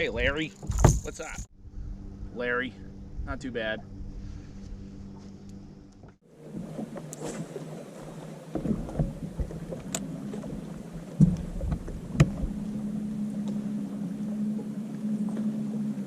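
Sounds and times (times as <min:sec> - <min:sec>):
low hum: 0:00.0 - 0:16.0
knocks against boat: 0:11.2 - 0:12.6.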